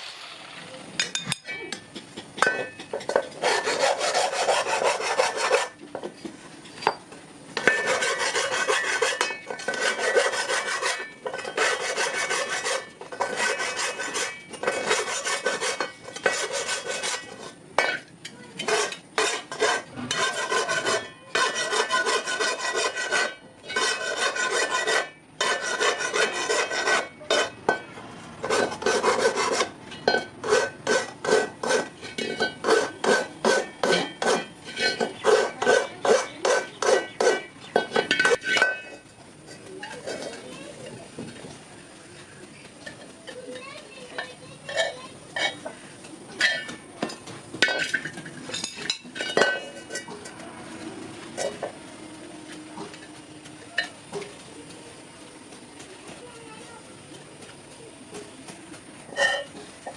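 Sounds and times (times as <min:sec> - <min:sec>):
metal pan being filed: 0:03.0 - 0:05.8, 0:07.6 - 0:18.0, 0:18.6 - 0:27.8, 0:28.4 - 0:38.8.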